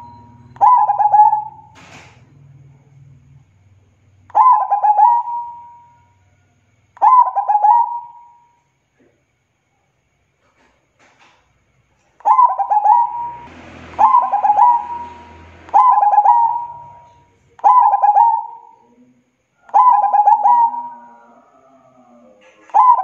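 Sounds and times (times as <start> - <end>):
dove cooing: 0.0 - 2.0, 4.3 - 6.0, 7.0 - 8.4, 12.3 - 19.0, 19.6 - 23.0.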